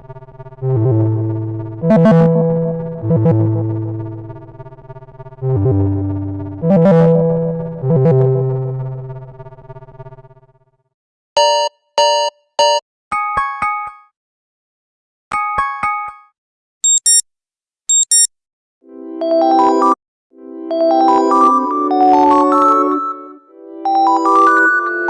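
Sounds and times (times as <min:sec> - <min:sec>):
bright chime beeps: 0:16.8 - 0:17.2, 0:17.9 - 0:18.3.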